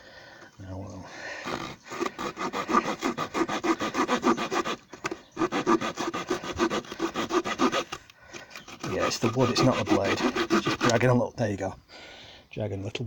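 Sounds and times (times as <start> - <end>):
saw blade rasping through wood: 1.4 - 8.0, 8.6 - 11.2.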